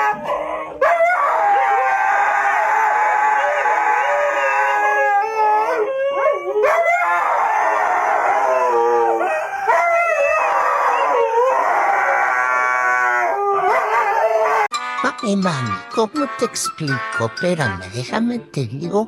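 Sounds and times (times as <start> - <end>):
dog howling: 0.0 - 14.7.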